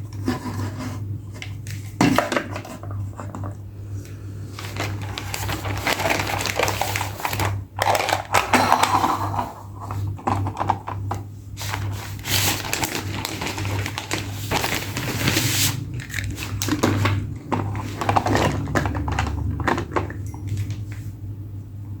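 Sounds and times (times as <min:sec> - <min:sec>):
steady low hum: 0:00.0 - 0:22.0
plastic packaging crinkling: 0:04.5 - 0:08.9, 0:11.6 - 0:21.0.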